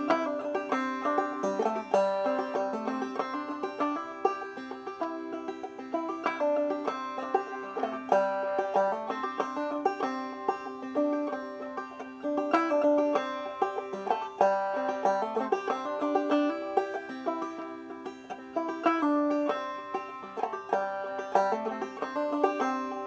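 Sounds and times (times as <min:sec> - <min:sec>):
banjo playing old-time tune: 0:00.0 - 0:23.0.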